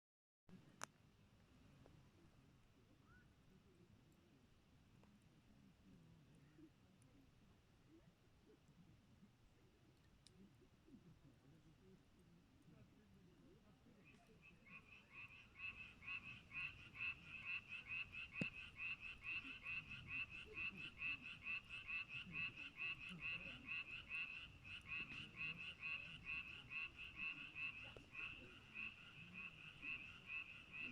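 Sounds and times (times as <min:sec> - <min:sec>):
frog croaking: 0:14.0 - 0:30.9.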